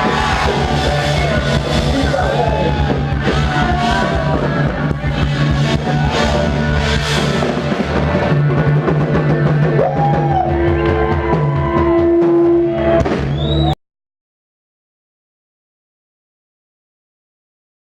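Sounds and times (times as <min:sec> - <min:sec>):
rock band playing live: 0:00.0 - 0:13.7
drum kit: 0:00.0 - 0:13.8.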